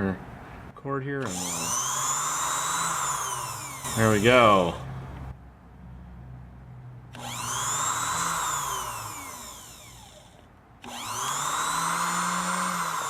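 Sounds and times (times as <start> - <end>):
sewing machine motor whirring: 1.2 - 4.6, 7.2 - 13.0.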